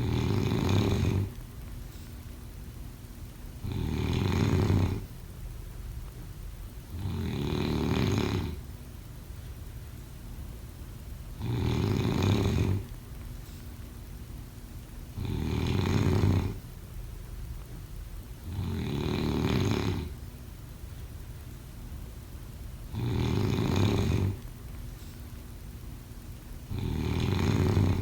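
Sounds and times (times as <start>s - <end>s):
snoring: 0.0s - 1.4s, 3.6s - 5.1s, 6.9s - 8.6s, 11.4s - 12.9s, 15.2s - 16.6s, 18.4s - 20.2s, 22.9s - 24.4s, 26.7s - 28.0s.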